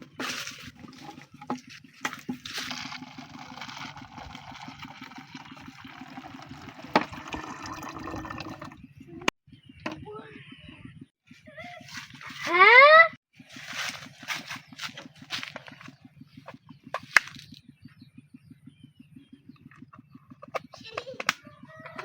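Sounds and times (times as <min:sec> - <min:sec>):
water running: 0:02.1 - 0:08.8.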